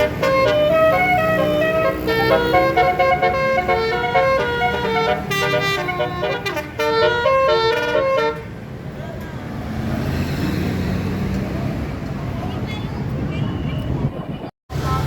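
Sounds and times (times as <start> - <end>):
bus horn playing a melody: 0.0 - 8.6.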